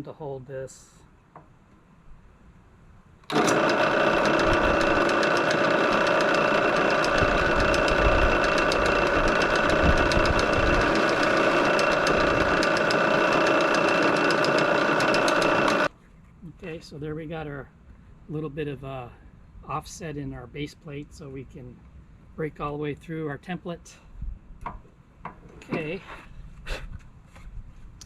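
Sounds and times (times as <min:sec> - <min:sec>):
drill press motor hum: 0:03.3 - 0:15.9.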